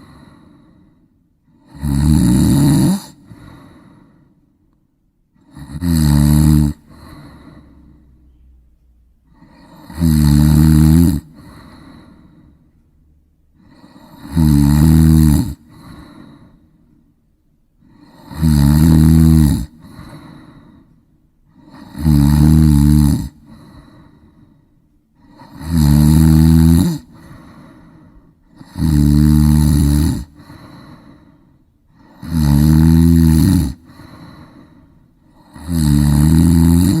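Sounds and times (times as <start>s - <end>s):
breathy exhale: 0.0s - 1.2s, 3.2s - 4.4s, 6.8s - 8.5s, 11.3s - 12.8s, 19.8s - 21.9s, 23.4s - 25.6s, 27.0s - 28.7s, 30.2s - 32.3s, 33.7s - 35.4s
person snoring: 0.0s - 4.2s, 5.4s - 8.2s, 9.3s - 12.6s, 13.6s - 16.8s, 17.8s - 20.9s, 21.5s - 24.4s, 25.2s - 37.0s.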